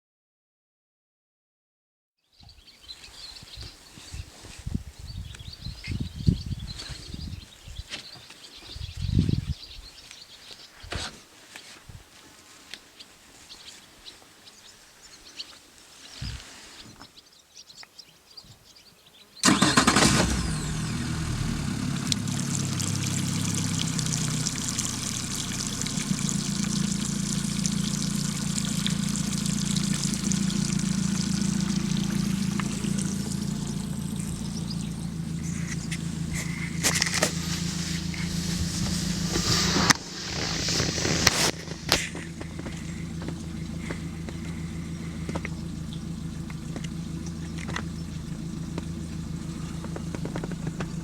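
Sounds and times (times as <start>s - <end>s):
outboard motor starting and running: 19.4s - 51.0s.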